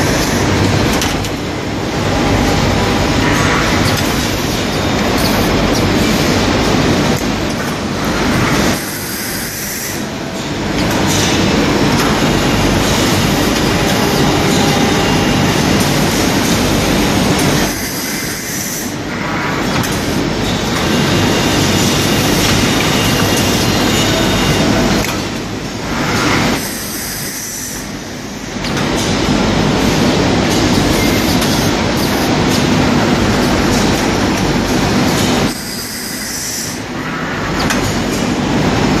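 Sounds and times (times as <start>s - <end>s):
cutting machine running: 0.0s - 28.0s.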